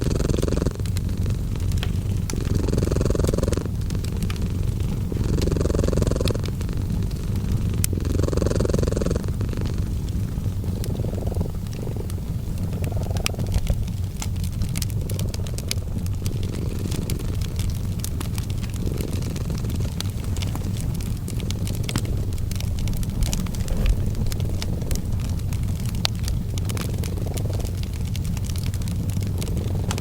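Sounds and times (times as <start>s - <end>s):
cat purring: 0.0s - 30.0s
wood fire crackling and popping: 0.0s - 30.0s.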